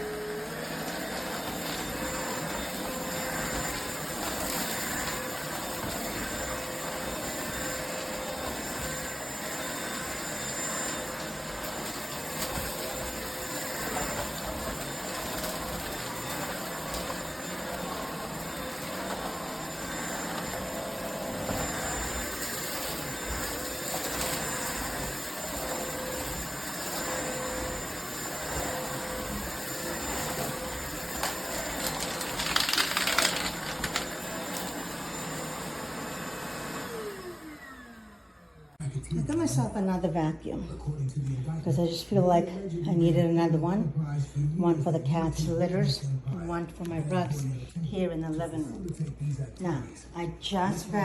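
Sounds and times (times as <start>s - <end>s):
stick vacuum running: 0.0s - 38.7s.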